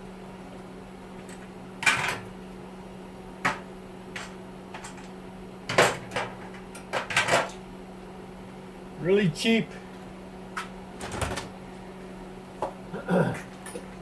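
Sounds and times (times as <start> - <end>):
steady low hum: 0.0 - 14.0
metal parts knocking and clattering: 4.2 - 5.1, 5.7 - 7.6.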